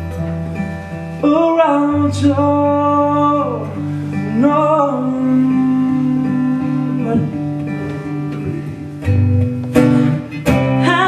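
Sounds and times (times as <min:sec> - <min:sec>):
guitar playing chords: 0:00.0 - 0:11.0
person singing: 0:01.2 - 0:09.0.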